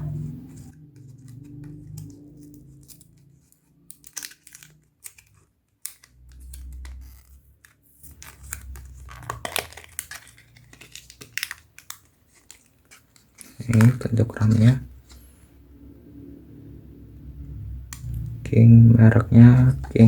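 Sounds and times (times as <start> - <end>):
plastic packaging crinkling: 0.6 - 15.2.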